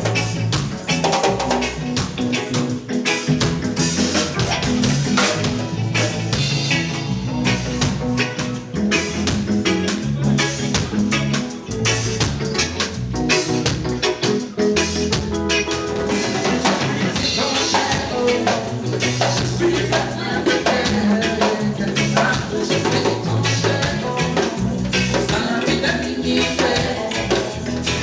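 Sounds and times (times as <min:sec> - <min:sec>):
bass line: 0:00.0 - 0:28.0
drum kit beat: 0:00.0 - 0:28.0
live band playing: 0:00.0 - 0:28.0.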